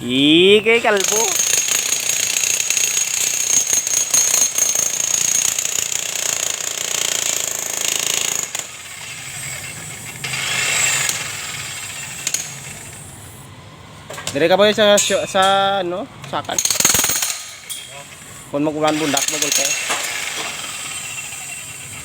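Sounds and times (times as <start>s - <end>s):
demolition hammer chiseling concrete: 0.8s - 12.9s, 18.8s - 22.0s.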